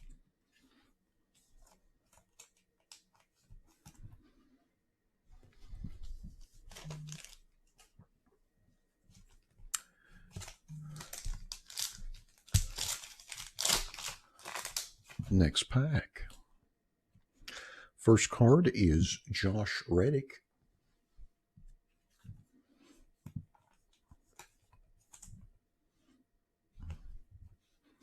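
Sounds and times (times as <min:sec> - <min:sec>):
foil wrapper crinkling and tearing: 0:06.7 - 0:07.4, 0:10.4 - 0:15.1.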